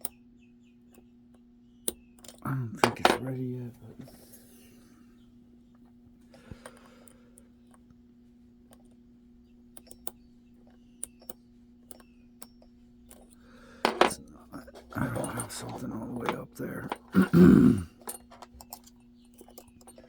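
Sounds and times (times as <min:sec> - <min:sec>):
lock pick clicking on pins: 0:01.8 - 0:03.2, 0:09.7 - 0:17.3, 0:17.9 - 0:20.0
steady low hum: 0:02.5 - 0:19.9.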